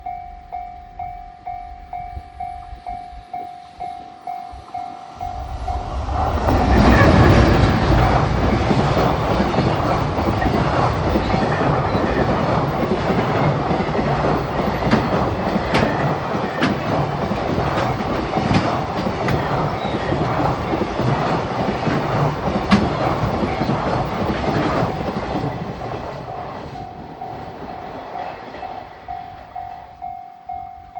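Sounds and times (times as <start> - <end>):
crossing warning bell ringing: 0.0 - 21.1, 22.4 - 30.9
freight train rolling: 0.0 - 30.9
wheels clattering over rail joints: 5.6 - 29.2.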